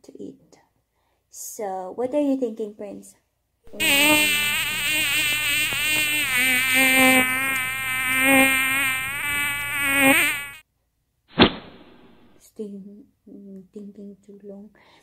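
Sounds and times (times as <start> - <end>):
buzzing fly-like drone: 3.7 - 10.6.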